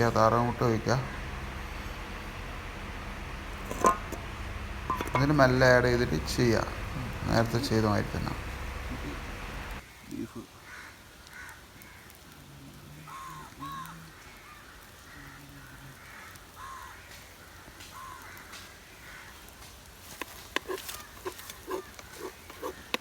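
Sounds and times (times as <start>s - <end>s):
crows cawing: 0.0s - 23.0s
sharp taps and clicks: 19.5s - 23.0s.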